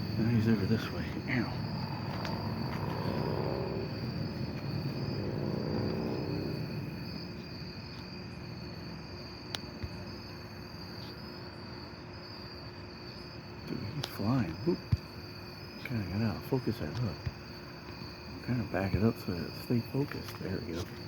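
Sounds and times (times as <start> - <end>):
jet aircraft rumble: 0.0 - 8.5
crickets chirping: 0.0 - 21.0.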